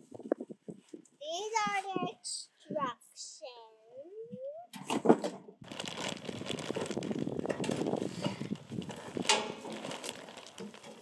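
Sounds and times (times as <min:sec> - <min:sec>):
packaging rustling: 0:05.6 - 0:11.0.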